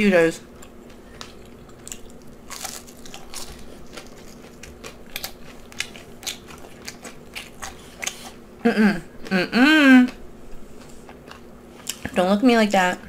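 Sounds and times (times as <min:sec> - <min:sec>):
chewing crunchy fried food: 0:00.5 - 0:08.4, 0:10.0 - 0:12.2.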